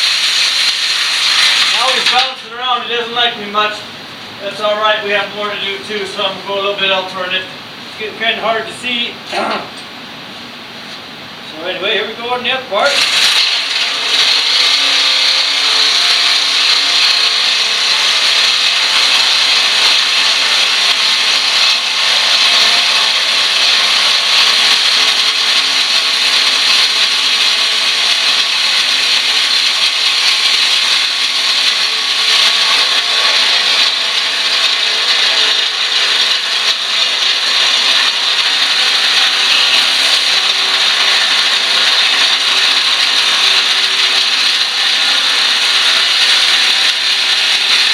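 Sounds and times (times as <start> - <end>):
jigsaw cutting sheet metal: 0.0 - 2.4, 12.9 - 47.9.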